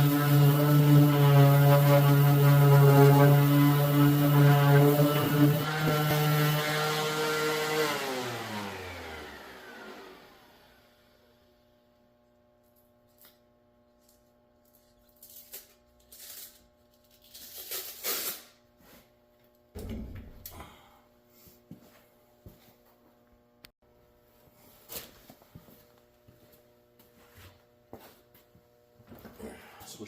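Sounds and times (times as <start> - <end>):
electric sander whining: 0.0 - 11.2.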